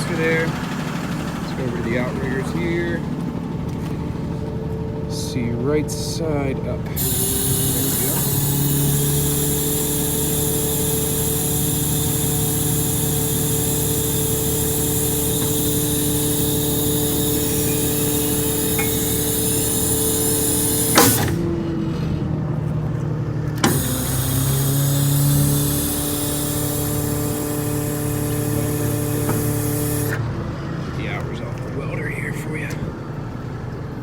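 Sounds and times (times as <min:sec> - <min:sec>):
diesel engine running: 0:00.0 - 0:34.0
click: 0:14.2 - 0:21.4, 0:23.5 - 0:30.2.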